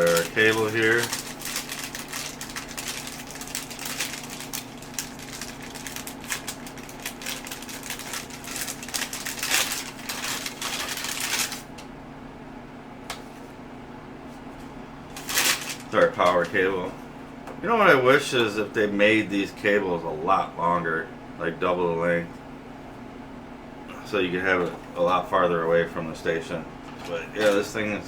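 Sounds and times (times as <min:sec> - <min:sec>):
packaging rustling and crinkling: 0:00.0 - 0:11.8, 0:15.1 - 0:16.7
faint steady hum: 0:00.0 - 0:28.0.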